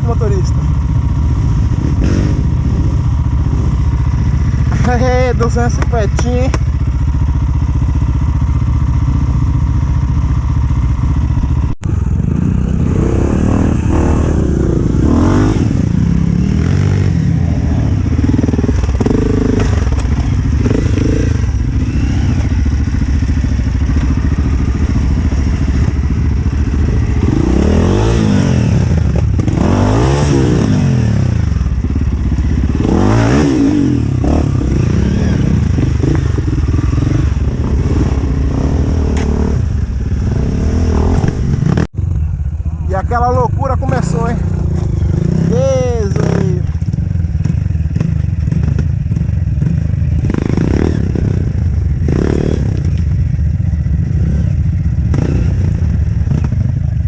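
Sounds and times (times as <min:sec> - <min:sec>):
dirt bike engine revving: 0:00.0 - 0:42.0, 0:43.3 - 0:57.0.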